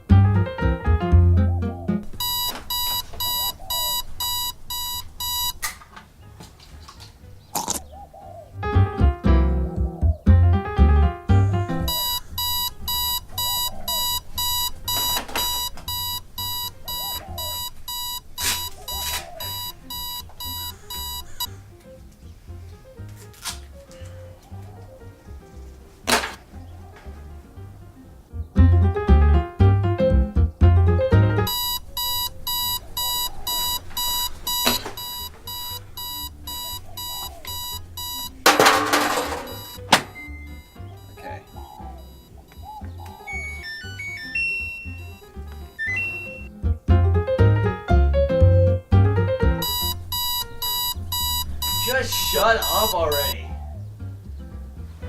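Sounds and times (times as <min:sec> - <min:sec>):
alarm clock beeping: 0:02.0 - 0:05.7, 0:11.7 - 0:21.5, 0:31.4 - 0:46.5, 0:49.6 - 0:53.4.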